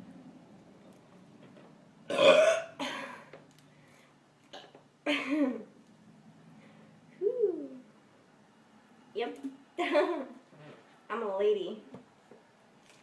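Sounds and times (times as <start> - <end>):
woman burping loudly: 2.1 - 3.2.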